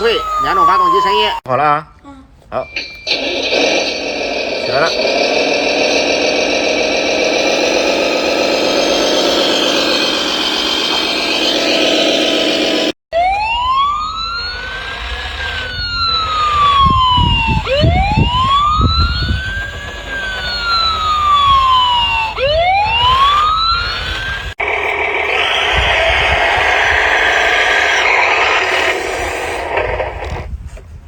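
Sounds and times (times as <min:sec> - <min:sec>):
toy electronic siren wailing: 0:00.0 - 0:01.4, 0:06.3 - 0:12.5, 0:13.2 - 0:29.5
steady motor noise: 0:03.1 - 0:30.5.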